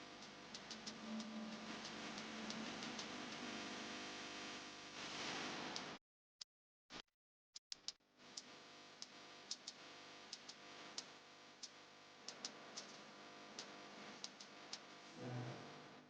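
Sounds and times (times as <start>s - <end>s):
sustained steady tones: 0.0s - 5.1s
sharp ticks: 0.2s - 3.4s, 7.7s - 13.0s, 13.6s - 14.9s.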